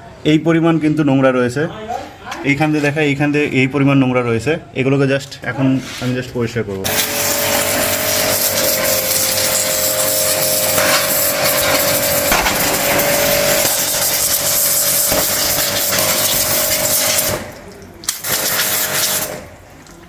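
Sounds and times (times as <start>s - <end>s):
pressure washer motor hum: 6.8s - 19.6s
high-pressure water jet hissing: 6.9s - 19.6s.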